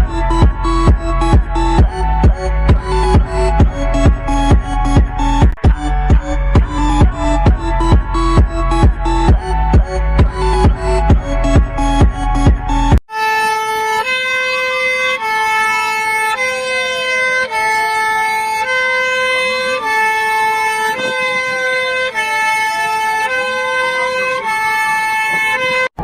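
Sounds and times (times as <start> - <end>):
siren tone gliding up and down: 0.0 - 13.0.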